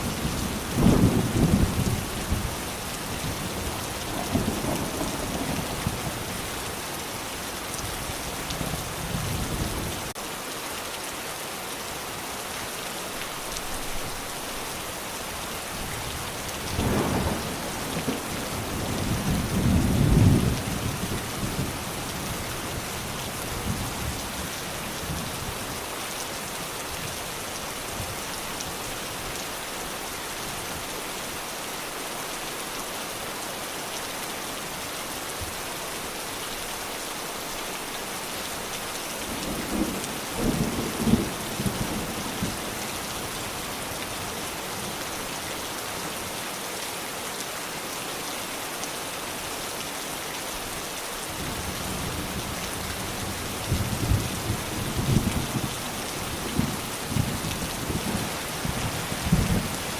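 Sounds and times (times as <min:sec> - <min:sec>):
steady rain falling: 0:00.0 - 0:59.9
thunder rumbling: 0:16.7 - 0:21.8.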